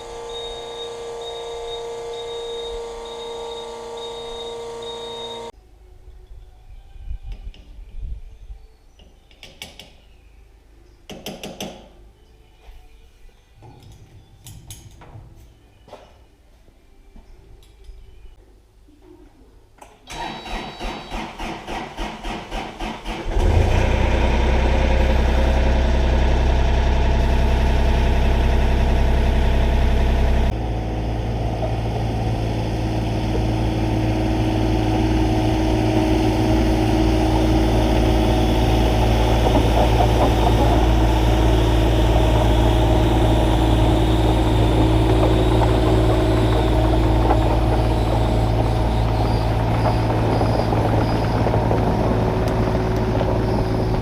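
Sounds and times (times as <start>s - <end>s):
diesel engine running: 0.0s - 5.5s, 23.3s - 54.0s.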